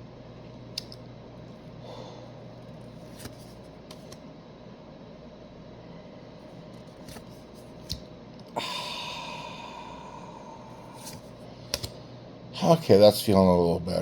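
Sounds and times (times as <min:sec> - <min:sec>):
man breathing out: 0:01.8 - 0:02.4, 0:08.5 - 0:11.1.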